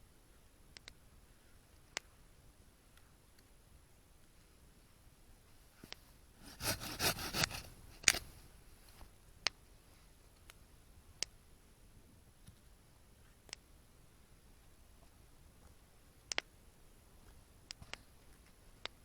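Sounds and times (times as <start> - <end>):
rustling and scraping: 5.8 - 9.1.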